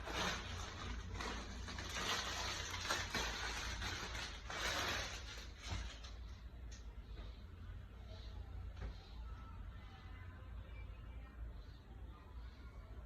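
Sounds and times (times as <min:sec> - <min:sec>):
packaging and cloth rustling: 0:00.0 - 0:06.3
low steady hum: 0:00.0 - 0:13.0.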